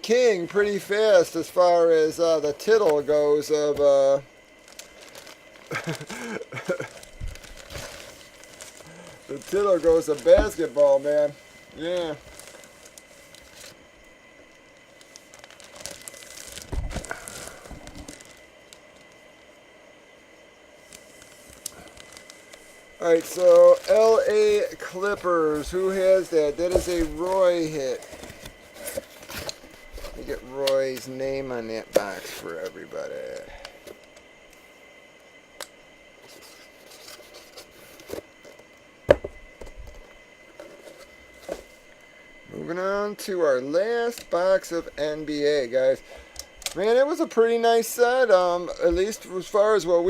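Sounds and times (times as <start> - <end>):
plastic packaging crinkling: 4.5 - 19.4, 20.8 - 34.3.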